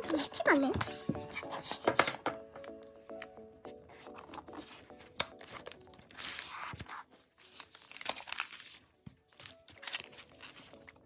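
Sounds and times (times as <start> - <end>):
packaging tearing and crinkling: 4.4 - 11.0.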